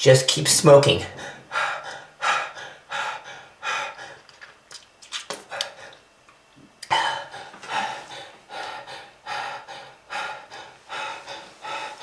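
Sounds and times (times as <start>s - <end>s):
person gasping for breath: 6.9s - 12.0s.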